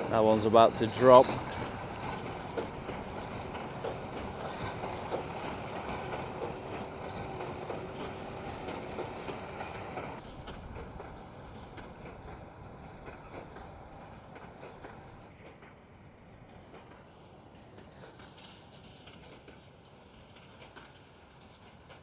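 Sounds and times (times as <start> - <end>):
tractor engine running: 0.0 - 10.2.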